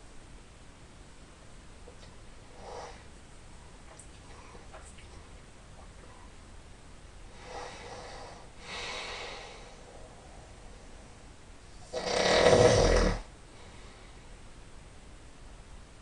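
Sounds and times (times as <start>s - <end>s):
soft breaths: 2.5s - 6.5s, 7.2s - 12.0s, 13.4s - 14.6s
man snoring: 11.8s - 13.3s.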